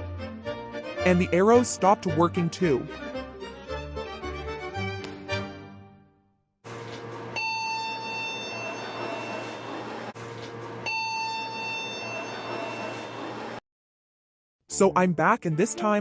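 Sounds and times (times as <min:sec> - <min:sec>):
electronic buzzer beep: 0:07.4 - 0:09.7, 0:10.9 - 0:13.2.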